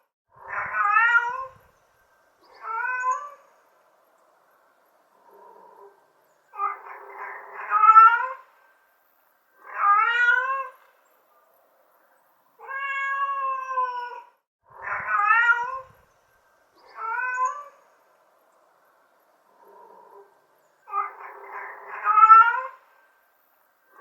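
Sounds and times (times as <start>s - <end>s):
cat meowing: 0.5s - 1.6s, 2.6s - 3.4s, 6.6s - 8.4s, 9.6s - 10.8s, 12.6s - 16.0s, 16.8s - 17.8s, 20.9s - 22.8s.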